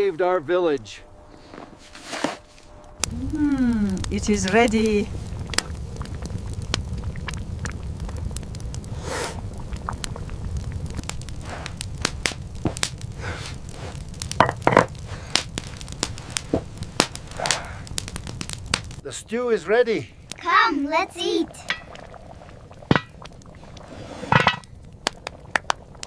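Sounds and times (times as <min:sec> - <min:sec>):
fire crackling and popping: 0:00.0 - 0:26.0
low rumble: 0:02.6 - 0:13.8.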